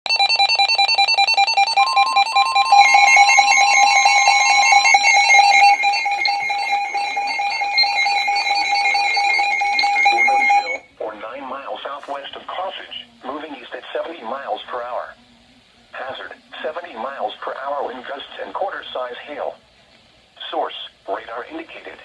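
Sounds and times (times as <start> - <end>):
stuttering shrill alert tones: 0.4 - 10.8.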